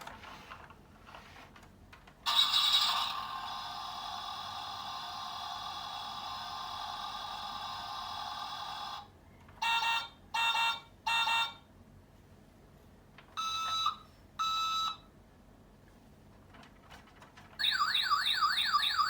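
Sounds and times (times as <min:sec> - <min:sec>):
electronic beeps: 0:17.6 - 0:19.0.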